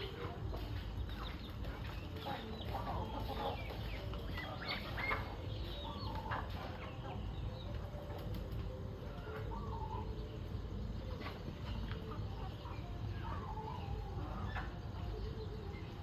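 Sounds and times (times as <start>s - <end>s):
chickens clucking: 0.0s - 16.0s.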